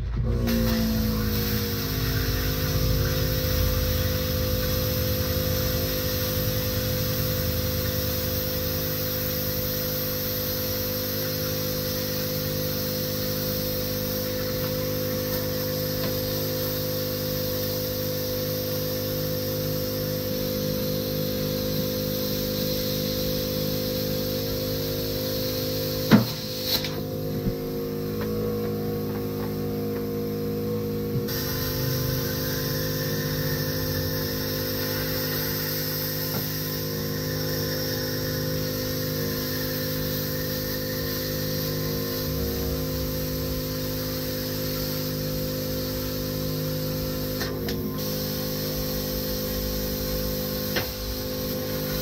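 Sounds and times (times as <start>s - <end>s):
plasma cutter hum and hiss: 0.0s - 52.0s.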